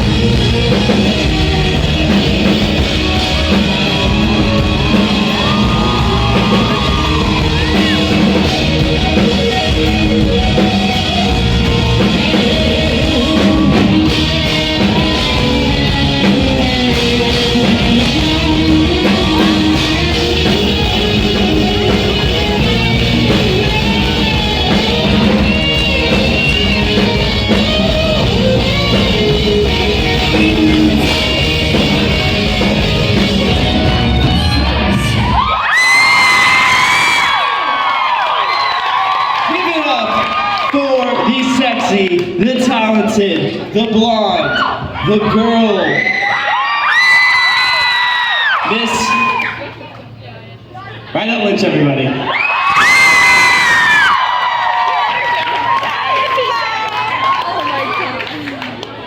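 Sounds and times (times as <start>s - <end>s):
electric guitars: 0.0s - 37.5s
drums: 0.0s - 51.2s, 52.2s - 59.0s.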